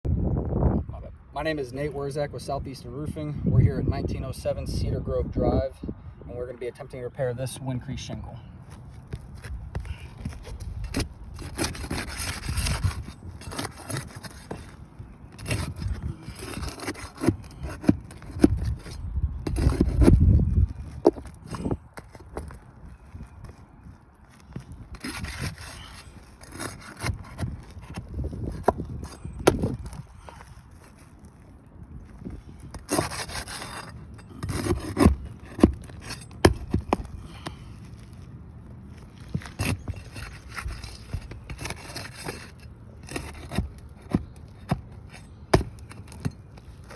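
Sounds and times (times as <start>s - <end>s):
scraping on roof shingles: 8.8s - 31.5s, 32.2s - 38.3s, 38.9s - 46.9s.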